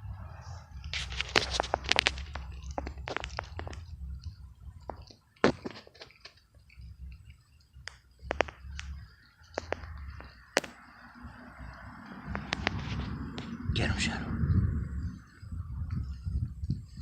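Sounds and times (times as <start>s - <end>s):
low rumble: 0.0s - 5.0s, 6.8s - 17.0s
cat chewing crunches: 0.9s - 13.6s.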